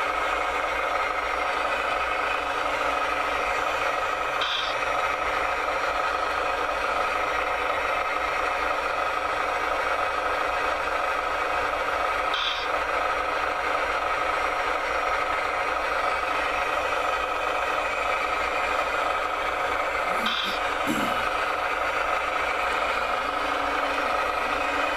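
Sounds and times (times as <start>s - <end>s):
electric drive whirring: 0.9s - 7.3s, 16.0s - 24.9s.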